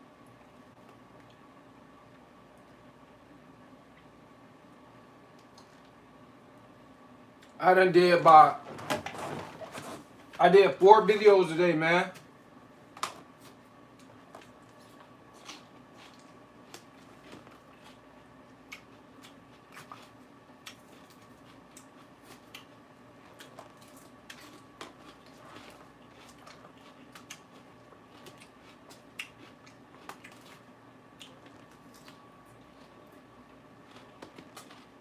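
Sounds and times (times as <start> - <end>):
faint electrical hum: 0.0 - 35.0
person chewing lettuce: 13.0 - 35.0.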